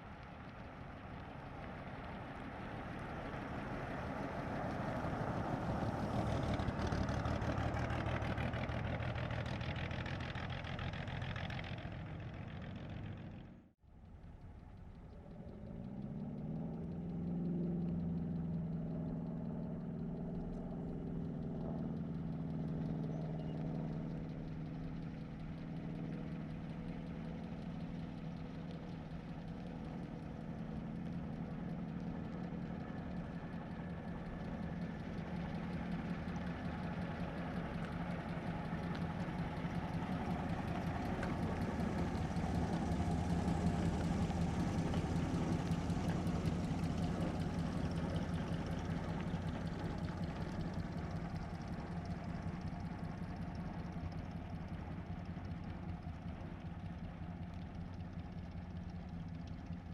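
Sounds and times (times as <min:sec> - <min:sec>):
car engine at low revs: 0:00.0 - 0:59.9.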